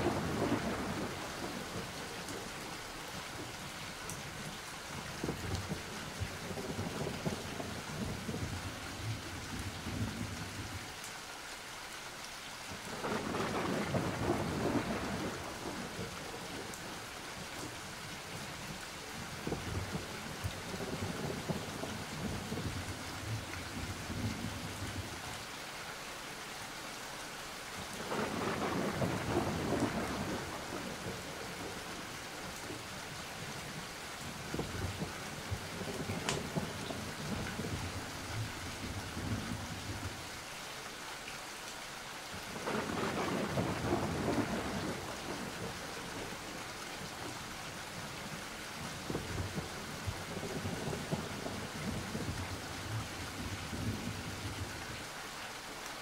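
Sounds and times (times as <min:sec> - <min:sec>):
rolling thunder: 0:00.0 - 0:02.0, 0:13.0 - 0:16.6, 0:28.0 - 0:32.0, 0:34.5 - 0:40.2, 0:42.6 - 0:46.4
steady rain: 0:00.0 - 0:56.0.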